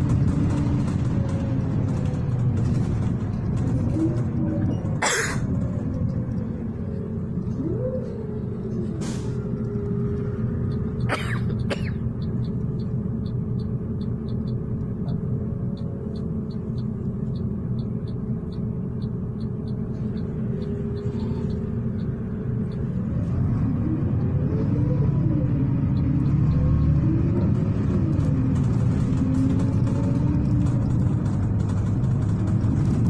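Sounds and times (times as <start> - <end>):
bus engine rumble: 0.0 - 33.0
drivetrain whine: 0.0 - 33.0
light ticking: 9.4 - 24.4.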